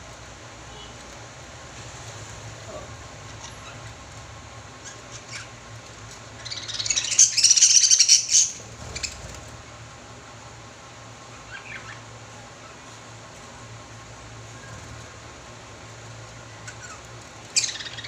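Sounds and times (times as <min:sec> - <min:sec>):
lovebirds chattering: 0:02.6 - 0:09.4, 0:11.2 - 0:12.9, 0:16.4 - 0:18.0
bird chirps: 0:06.4 - 0:09.2, 0:16.6 - 0:18.0.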